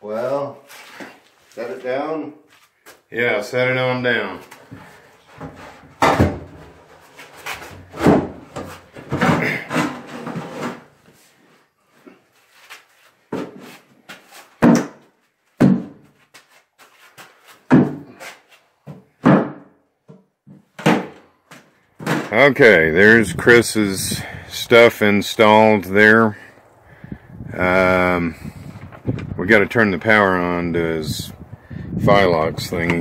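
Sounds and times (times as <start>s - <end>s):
equipment thumps and clunks: 4.5s - 10.9s, 14.6s - 16.2s, 17.7s - 18.2s, 18.8s - 22.4s, 28.7s - 29.4s.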